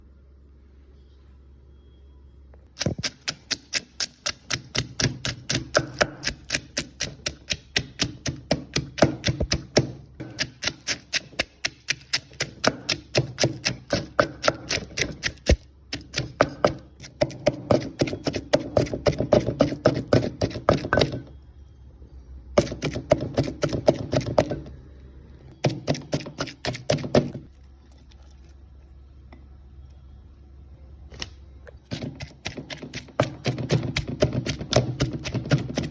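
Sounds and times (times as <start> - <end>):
pestle pounding in a mortar: 2.8 - 21.3, 22.6 - 24.7, 25.6 - 27.5, 31.9 - 35.9.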